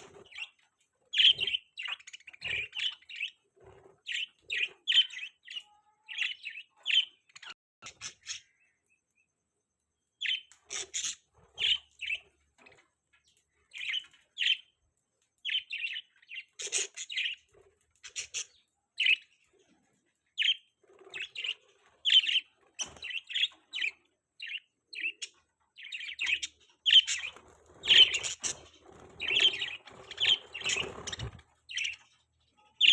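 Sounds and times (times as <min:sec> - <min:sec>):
budgerigars chirping: 0:23.1 - 0:32.0.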